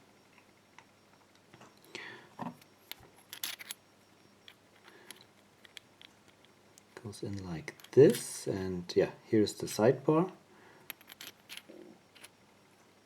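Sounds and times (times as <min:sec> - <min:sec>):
metal lock parts clicking and scraping: 0:02.9 - 0:03.8, 0:07.7 - 0:08.4, 0:10.9 - 0:12.4.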